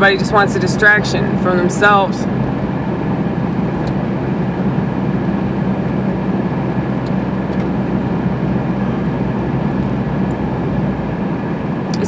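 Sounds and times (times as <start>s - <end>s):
car road and engine noise: 0.0s - 12.0s.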